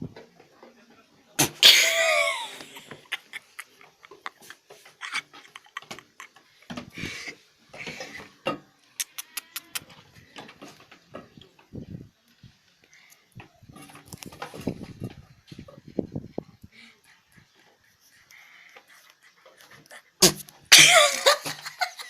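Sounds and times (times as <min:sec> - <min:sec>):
goat sneezing: 0:01.4 - 0:02.4
goat snorting: 0:06.8 - 0:08.4.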